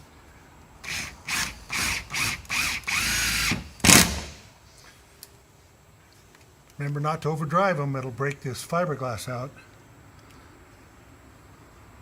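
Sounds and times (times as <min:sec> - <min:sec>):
power drill driving screws: 0:00.8 - 0:04.4.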